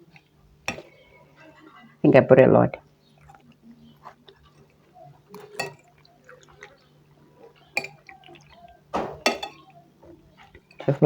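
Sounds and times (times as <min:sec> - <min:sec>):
cutlery tapping on plate: 0:00.7 - 0:01.0, 0:07.8 - 0:08.1, 0:09.0 - 0:09.8.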